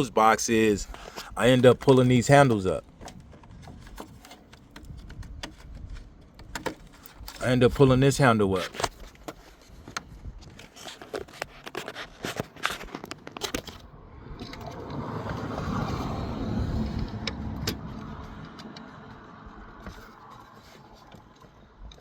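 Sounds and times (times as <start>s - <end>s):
plastic latch clicks and scrapes: 3.0s - 7.9s, 16.6s - 19.2s.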